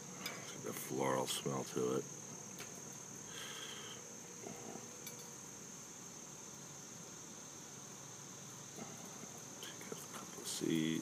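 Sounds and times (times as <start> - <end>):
crickets chirring: 0.0 - 11.0.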